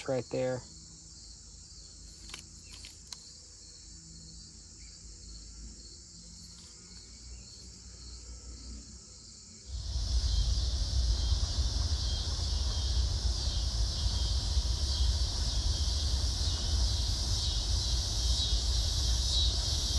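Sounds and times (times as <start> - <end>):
crickets chirping: 0.0 - 19.9
low rumble: 9.7 - 19.9.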